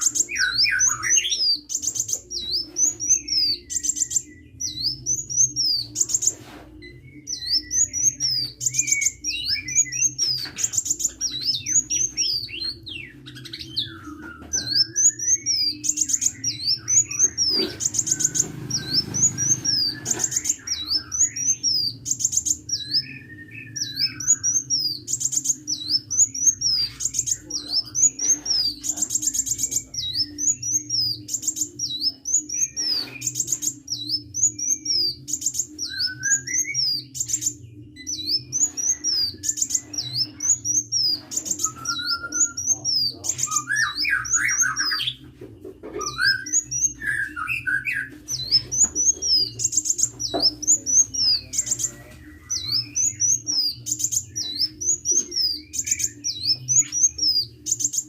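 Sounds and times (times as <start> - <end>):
lower bird whistles: 32.6 - 45.2.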